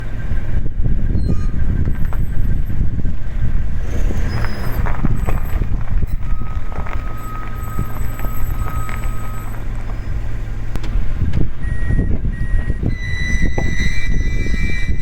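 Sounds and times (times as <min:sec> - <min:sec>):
van engine low rumble: 0:00.0 - 0:15.0
high-pitched brake squeals: 0:01.1 - 0:02.8, 0:03.9 - 0:10.4, 0:11.6 - 0:15.0.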